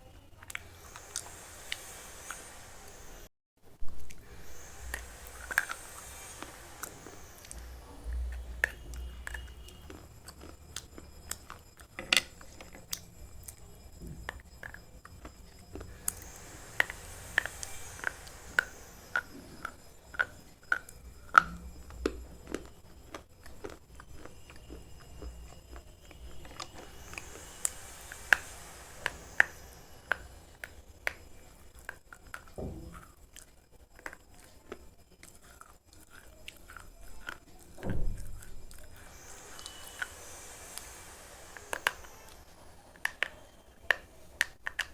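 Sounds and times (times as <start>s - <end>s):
pencil being chewed crunching: 4.1s - 32.6s, 33.3s - 37.8s.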